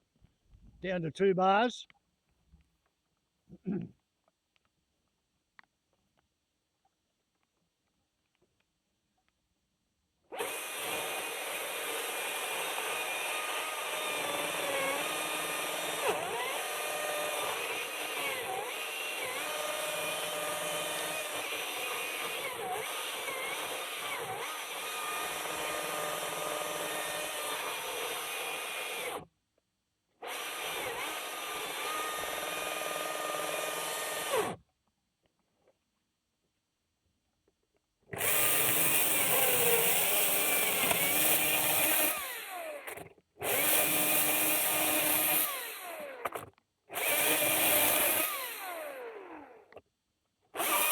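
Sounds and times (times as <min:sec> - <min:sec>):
electric chainsaw motor whine: 0:10.4 - 0:29.2, 0:30.2 - 0:34.6, 0:38.2 - 0:49.8, 0:50.6 - 0:50.9.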